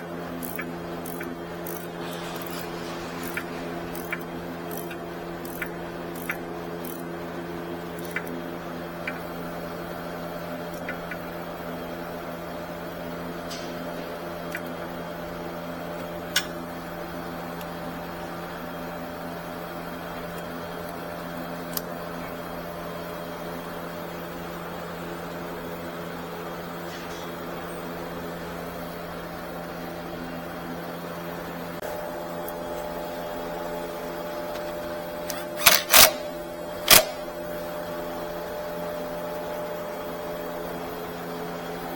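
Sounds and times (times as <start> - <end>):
mechanical hum: 0.0 - 41.9
sharp clicks: 36.9 - 37.2.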